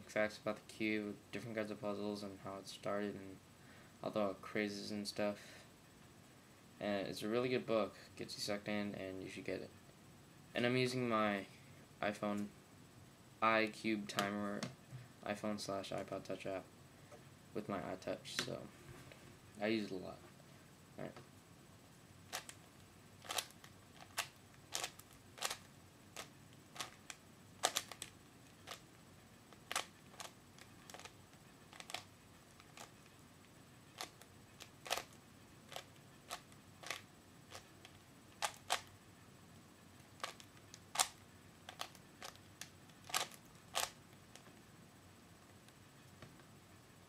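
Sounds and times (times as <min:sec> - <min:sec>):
puzzle cube plastic clacks: 0:23.2 - 0:28.8, 0:29.5 - 0:33.1, 0:33.9 - 0:38.9, 0:40.2 - 0:44.5.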